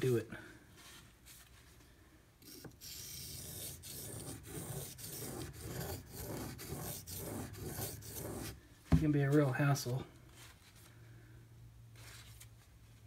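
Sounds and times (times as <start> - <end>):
knife scraping on a whetstone: 2.5 - 8.6.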